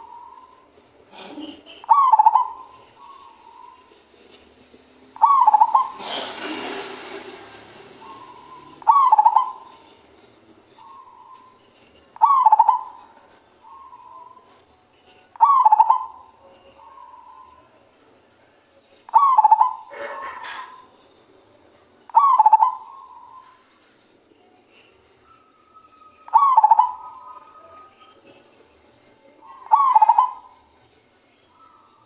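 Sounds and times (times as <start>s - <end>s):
dove cooing: 0.0s - 4.1s, 5.1s - 14.4s, 15.2s - 17.7s, 19.0s - 21.0s, 22.1s - 23.7s, 24.7s - 32.0s
brief hiss: 6.0s - 8.7s.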